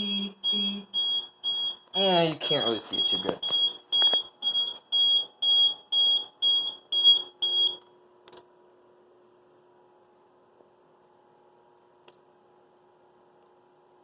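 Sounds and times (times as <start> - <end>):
fire alarm sounder beeping: 0.0 - 7.9.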